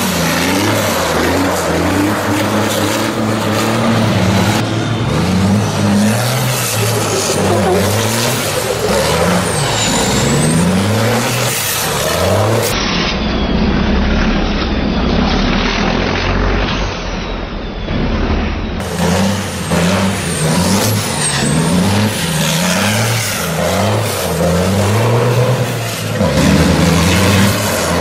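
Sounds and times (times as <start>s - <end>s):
diesel engine revving: 0.0s - 28.0s
high whistle: 2.9s - 16.1s.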